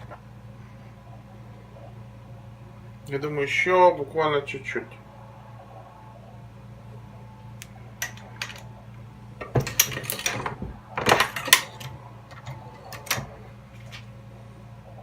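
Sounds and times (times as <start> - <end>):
steady low hum: 0.0 - 15.0
metallic clicks and clattering: 8.0 - 8.7, 9.4 - 13.4.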